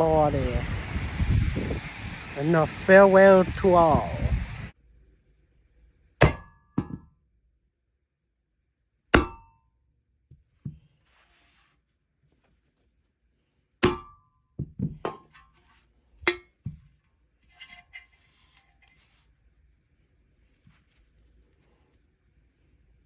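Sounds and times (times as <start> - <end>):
rock striking metal: 6.2 - 7.1, 9.1 - 9.6, 13.8 - 15.4
faint scraping: 10.8 - 12.8, 17.4 - 19.4.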